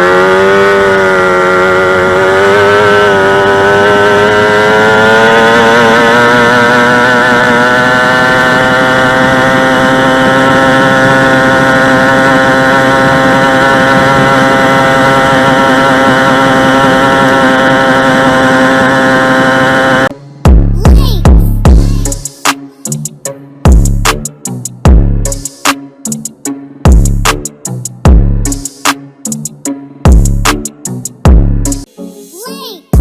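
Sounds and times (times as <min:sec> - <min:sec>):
two-stroke racing engine revving: 0:00.0 - 0:20.1.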